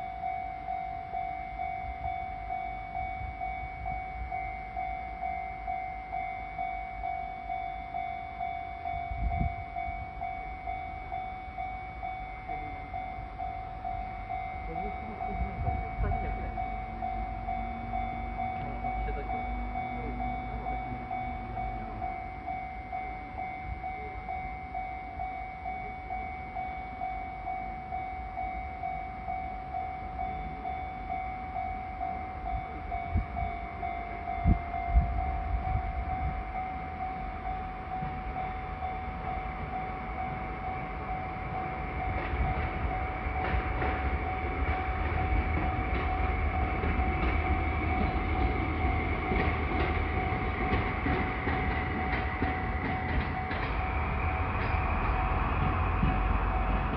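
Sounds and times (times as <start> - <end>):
level crossing bell dinging: 0.0 - 53.9
train passing: 0.0 - 56.9
wheels clicking over rail joints: 39.1 - 56.9.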